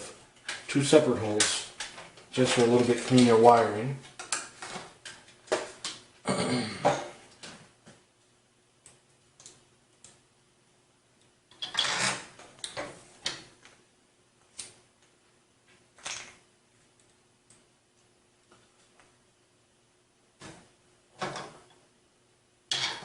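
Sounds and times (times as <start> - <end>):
clicks and knocks of handling parts: 1.4 - 6.0.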